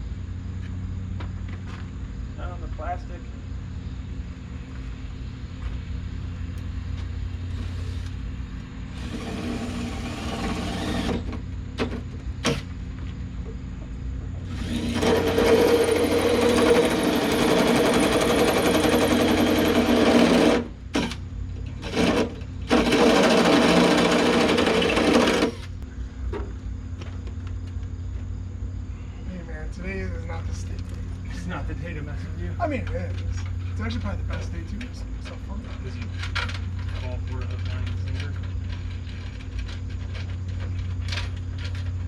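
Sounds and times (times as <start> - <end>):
power tool motor whirring: 9.0 - 11.3, 14.4 - 21.1, 21.8 - 25.8.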